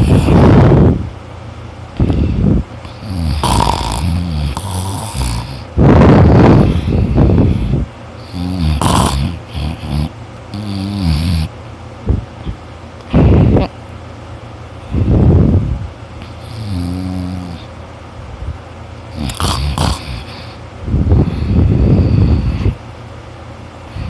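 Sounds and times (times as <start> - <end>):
person snoring loudly: 0.0 - 0.9, 2.0 - 11.5, 16.2 - 17.7, 19.1 - 20.6.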